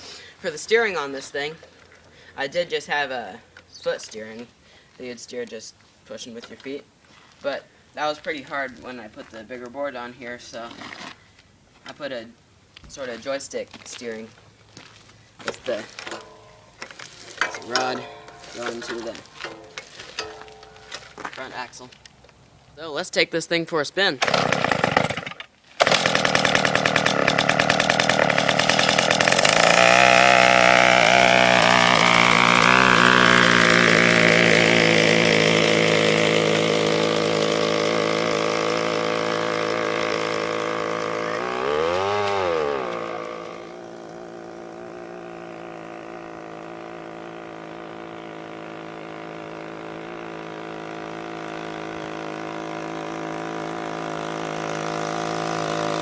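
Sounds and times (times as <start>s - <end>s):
two-stroke engine revving: 16.6s - 21.2s, 24.2s - 56.0s.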